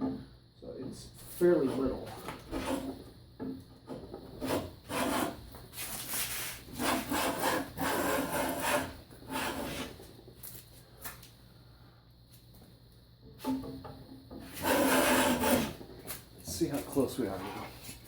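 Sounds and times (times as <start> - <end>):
hand plane rasping on wood: 2.5 - 3.0, 4.4 - 5.4, 6.7 - 10.0, 14.4 - 15.8.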